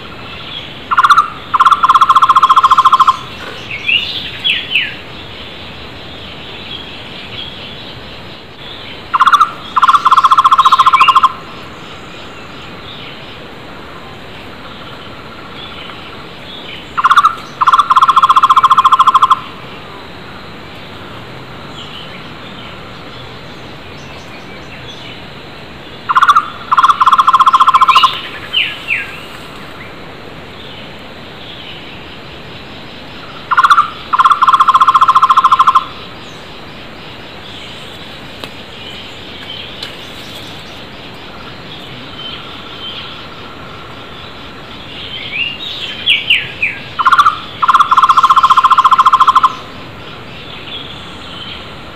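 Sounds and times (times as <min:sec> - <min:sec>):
birds chirping: 0:00.0 - 0:51.9
bird trilled call: 0:00.4 - 0:05.0, 0:09.1 - 0:11.5, 0:16.9 - 0:19.6, 0:26.1 - 0:29.2, 0:33.2 - 0:36.5, 0:44.8 - 0:49.8.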